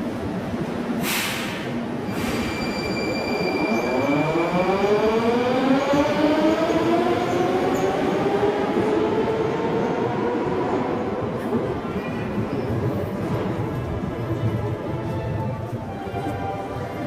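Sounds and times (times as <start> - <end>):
train car rumble: 0.0 - 3.0, 3.7 - 17.0
air hissing: 1.0 - 2.6.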